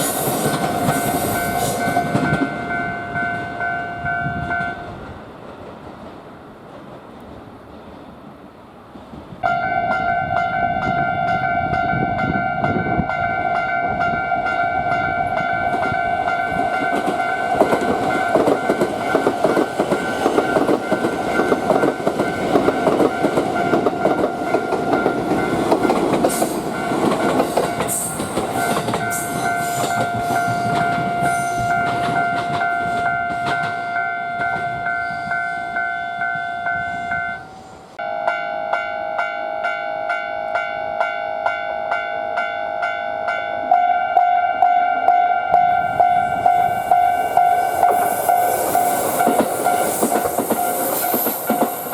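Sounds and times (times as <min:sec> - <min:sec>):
train wheels clattering over joints: 0:00.0 - 0:02.7, 0:15.6 - 0:33.8, 0:46.4 - 0:51.9
level crossing warning bell: 0:00.4 - 0:05.0, 0:09.4 - 0:49.8.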